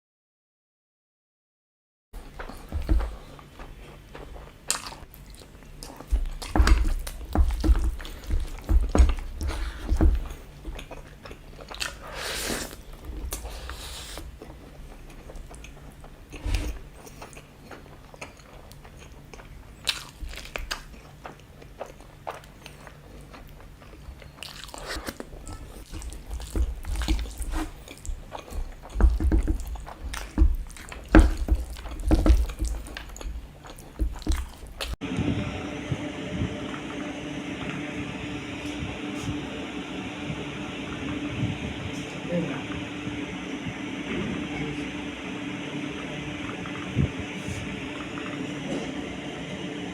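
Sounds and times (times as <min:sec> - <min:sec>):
wet chewing and crunching: 0:02.2 - 0:35.0.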